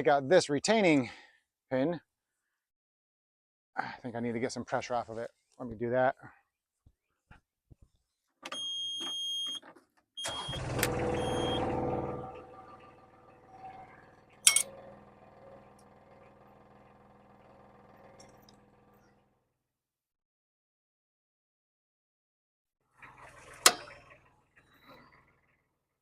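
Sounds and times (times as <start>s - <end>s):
excavator warning beeper: 8.5s - 9.6s, 10.2s - 11.9s
excavator engine starting and idling: 10.2s - 19.4s, 22.9s - 25.8s.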